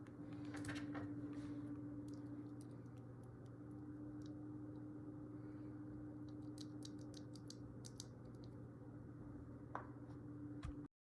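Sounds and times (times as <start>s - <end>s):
steady low hum: 0.0s - 10.9s.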